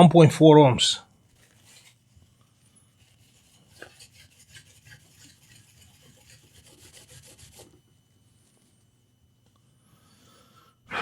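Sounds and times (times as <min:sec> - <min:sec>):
small tools scraping: 0:02.7 - 0:07.8.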